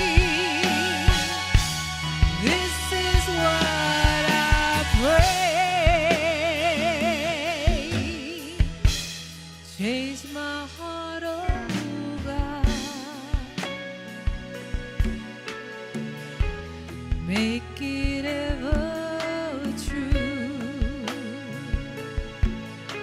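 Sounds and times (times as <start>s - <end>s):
singer with wide vibrato: 0.0s - 9.1s
regular drum hits: 0.0s - 9.6s, 11.4s - 23.0s
gospel band playing: 0.0s - 23.0s.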